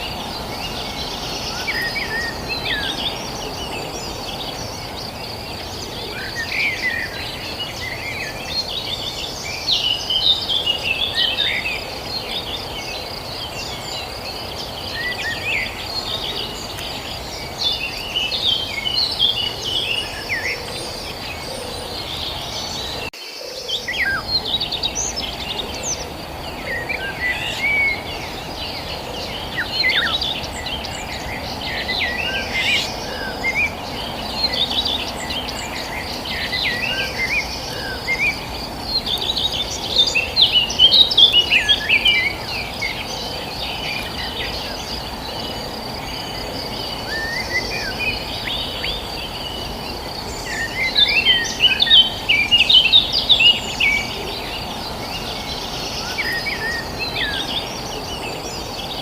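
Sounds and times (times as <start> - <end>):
low rushing background noise: 0.0 - 59.0
songbirds chirping: 0.0 - 59.0.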